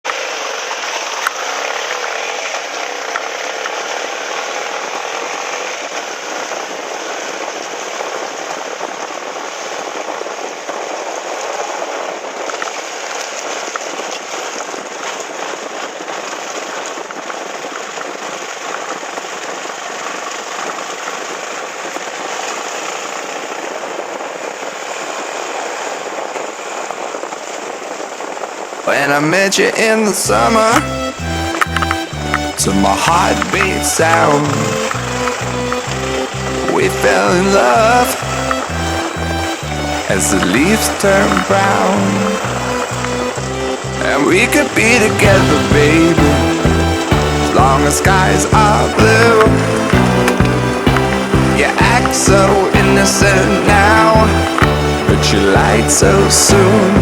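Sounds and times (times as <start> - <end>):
wind and road noise: 0.1 - 57.0
motorcycle engine running: 44.8 - 57.0.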